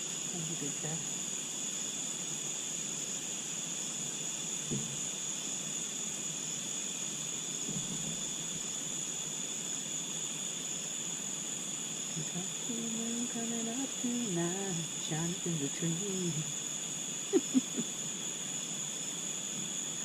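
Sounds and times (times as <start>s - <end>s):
night insects chirping: 0.0s - 20.0s
faint soft knocks: 4.7s - 5.0s.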